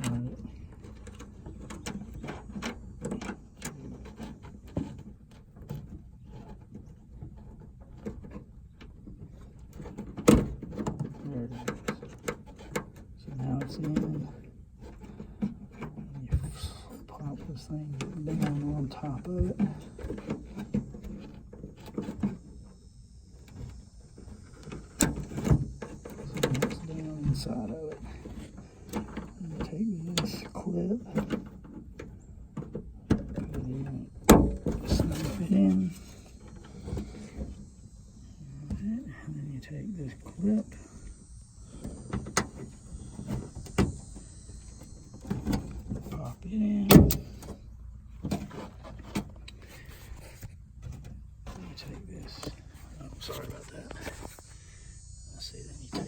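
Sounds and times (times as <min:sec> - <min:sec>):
clicks taps and scraping: 0:00.0 - 0:56.0.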